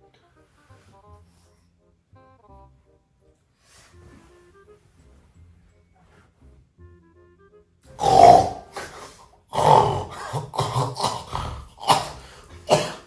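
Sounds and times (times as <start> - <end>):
man fake snoring: 8.0 - 13.0
short snorts and grunts: 8.0 - 13.0.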